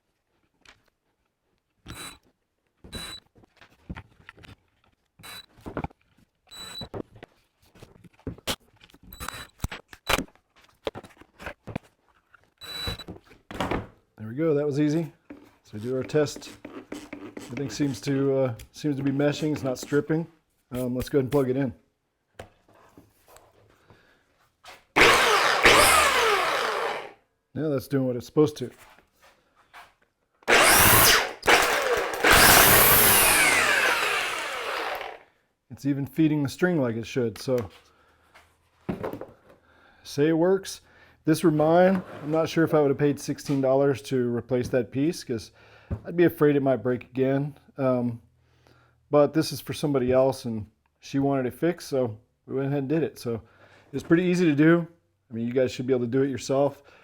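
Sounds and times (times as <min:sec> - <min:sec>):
electric string trimmer motor: 0:25.0 - 0:27.2, 0:30.5 - 0:35.3
short whirring bursts: 0:25.0 - 0:27.2, 0:30.5 - 0:35.2.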